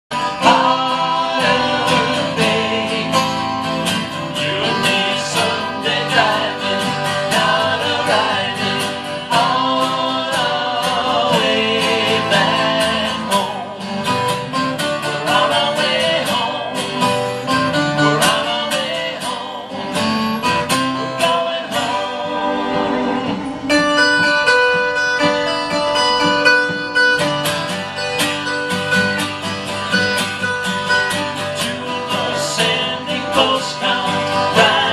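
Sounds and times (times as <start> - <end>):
acoustic guitar: 0.1 - 34.9
person singing: 0.3 - 13.9, 14.8 - 17.1, 17.8 - 20.2, 20.8 - 24.2, 31.4 - 34.9.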